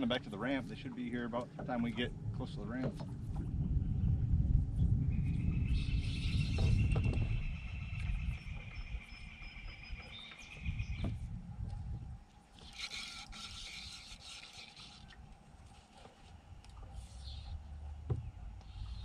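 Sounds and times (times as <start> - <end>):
low bumps: 0.0 - 12.3, 15.2 - 19.0
rubbing and scraping handling noise: 12.5 - 17.3.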